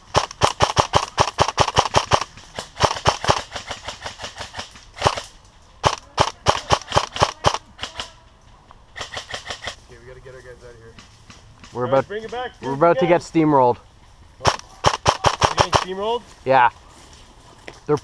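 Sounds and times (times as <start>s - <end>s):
airsoft rifles firing pops: 0.0s - 8.1s, 9.0s - 9.8s, 14.4s - 16.0s.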